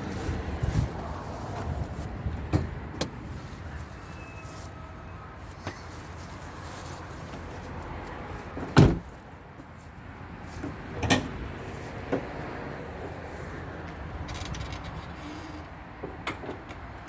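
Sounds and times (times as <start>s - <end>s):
clunks in car engine bay: 8.7s - 9.1s.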